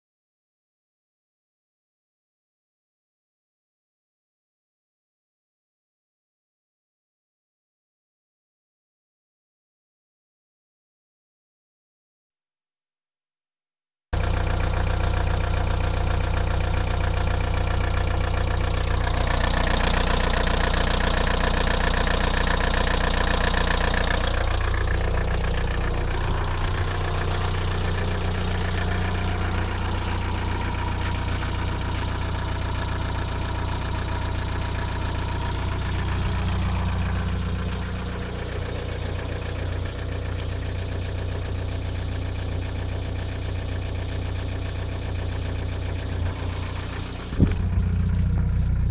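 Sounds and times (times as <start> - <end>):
diesel engine idling with ticking knock: 14.2 - 48.9.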